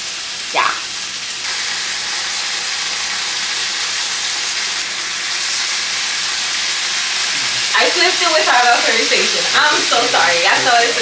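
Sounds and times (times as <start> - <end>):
chicken sizzling in oil: 0.0 - 11.0.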